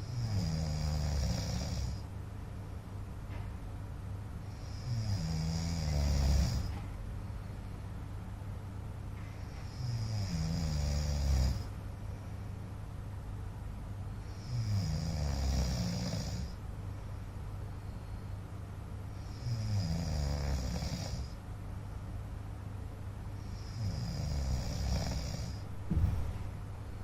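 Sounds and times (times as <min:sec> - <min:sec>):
man snoring: 0:00.0 - 0:02.0, 0:04.5 - 0:06.7, 0:09.6 - 0:11.7, 0:14.3 - 0:16.6, 0:19.2 - 0:21.4, 0:23.4 - 0:25.6
short thump: 0:25.8 - 0:26.8.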